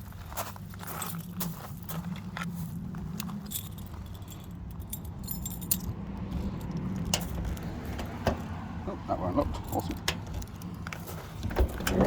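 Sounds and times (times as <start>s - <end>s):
keys jangling: 3.2s - 8.6s, 9.5s - 12.0s.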